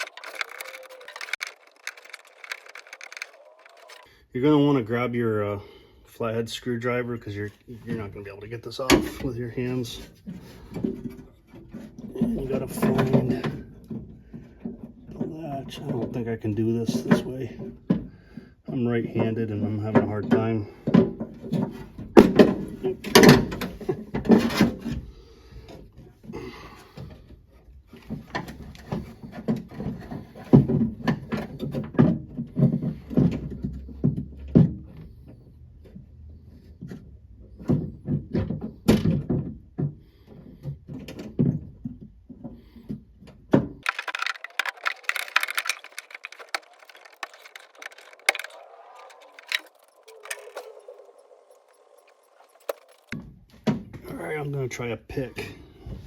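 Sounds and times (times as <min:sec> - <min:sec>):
thin metallic rattling: 0:43.8 - 0:53.2.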